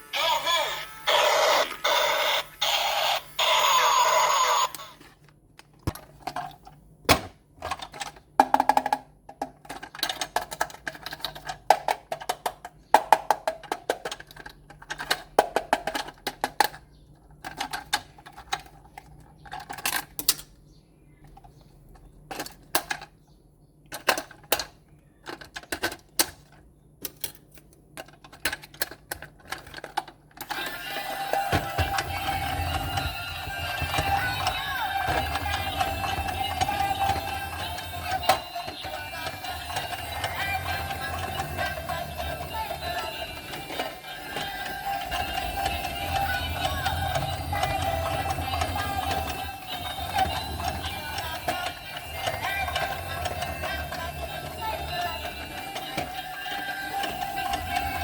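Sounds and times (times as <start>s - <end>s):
toy police siren: 0.0s - 5.1s, 30.4s - 58.0s
plastic toy parts clicking: 4.7s - 23.2s, 23.9s - 58.0s.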